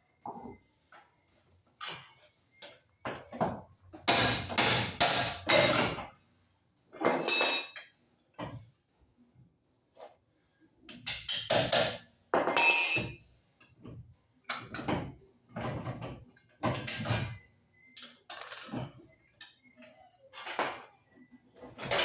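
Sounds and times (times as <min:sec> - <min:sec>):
metal tools knocking and clanking: 0:07.0 - 0:08.6, 0:10.9 - 0:13.2, 0:18.0 - 0:19.7.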